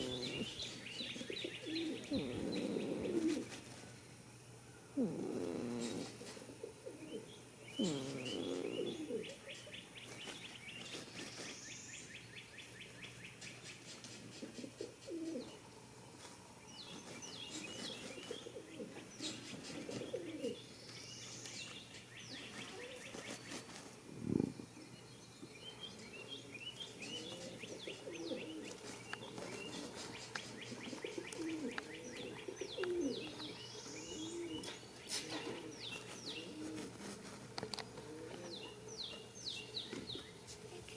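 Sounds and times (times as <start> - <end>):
goat snoring: 0.0 - 0.7, 1.6 - 3.6, 5.0 - 6.6, 7.7 - 9.3, 24.0 - 24.8
songbirds singing: 0.0 - 40.9.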